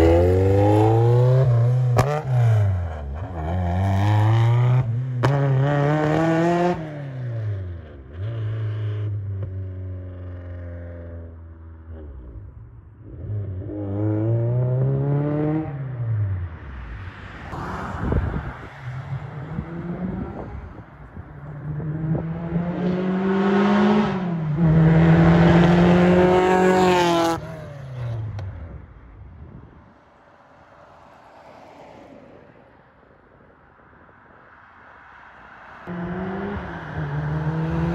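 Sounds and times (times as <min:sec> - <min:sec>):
car engine revving: 0:21.5 - 0:28.5, 0:35.9 - 0:37.9.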